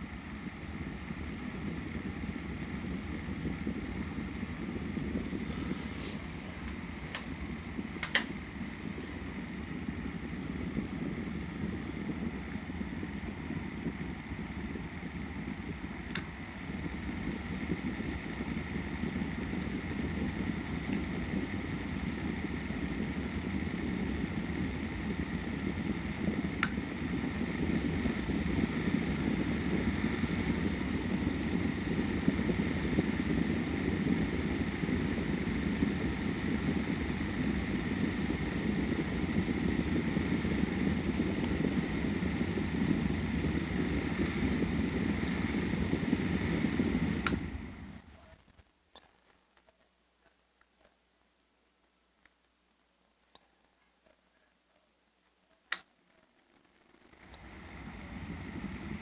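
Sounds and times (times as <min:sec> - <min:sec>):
box fan humming: 0:00.0 - 0:48.7, 0:52.8 - 0:59.0
fan switch click: 0:08.0 - 0:08.4, 0:16.0 - 0:16.3, 0:47.2 - 0:47.5, 0:55.7 - 0:55.9.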